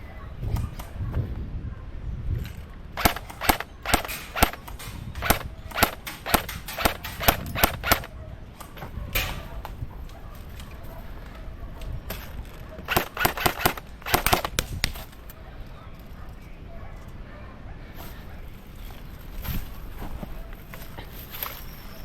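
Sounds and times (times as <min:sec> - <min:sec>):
airsoft gun shots: 0:03.0 - 0:09.5, 0:12.8 - 0:15.0.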